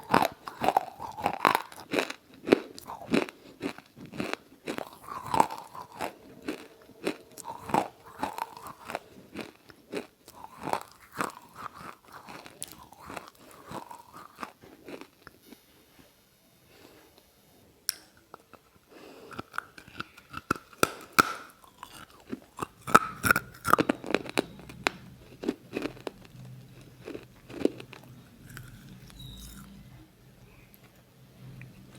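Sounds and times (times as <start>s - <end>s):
crunching and chewing: 0.0s - 15.5s, 17.9s - 29.8s.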